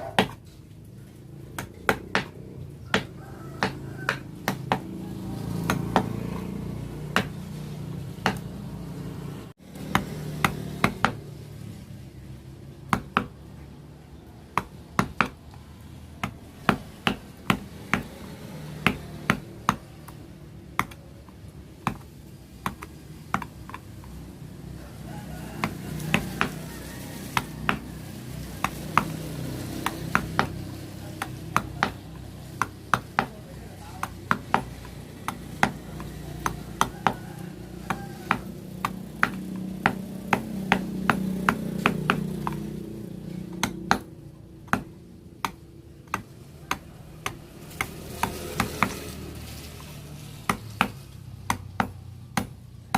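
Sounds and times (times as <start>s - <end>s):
mallet striking chisel: 1.5s - 4.9s, 7.1s - 7.5s, 8.2s - 8.5s, 9.7s - 11.2s, 12.9s - 13.4s, 14.6s - 15.6s, 16.2s - 23.9s, 29.8s - 30.6s, 31.2s - 37.2s, 38.3s - 42.6s, 43.4s - 49.0s, 50.5s - 52.6s.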